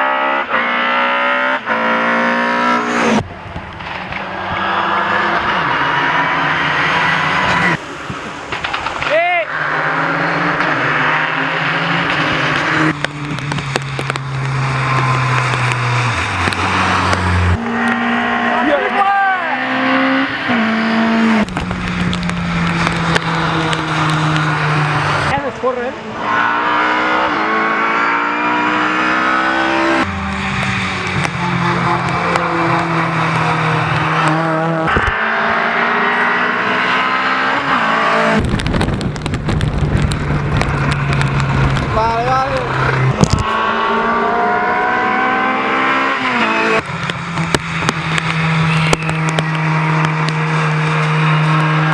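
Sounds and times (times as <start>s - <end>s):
rally car engine running hard: 0.0s - 51.9s
exhaust pops and crackles: 2.6s - 6.0s, 6.7s - 19.1s, 20.5s - 25.9s, 29.4s - 36.3s, 37.7s - 44.4s, 46.1s - 51.9s.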